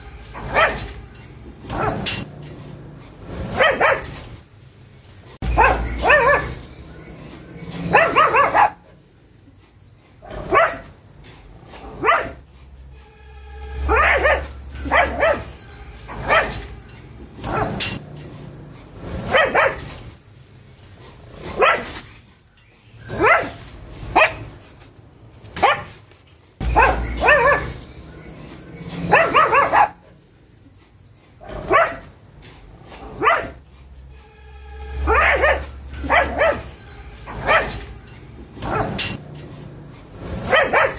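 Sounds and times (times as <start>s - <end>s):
dog barking: 0.4s - 1.0s, 1.7s - 2.3s, 3.4s - 4.2s, 5.4s - 6.7s, 7.8s - 9.0s, 10.2s - 10.9s, 11.8s - 12.4s, 13.9s - 16.7s, 17.4s - 18.0s, 19.2s - 19.9s, 21.5s - 22.0s, 23.1s - 24.5s, 25.6s - 26.0s, 26.6s - 27.8s, 29.0s - 30.2s, 31.4s - 32.1s, 33.0s - 33.6s, 35.0s - 37.9s, 38.6s - 39.2s, 40.4s - 40.9s.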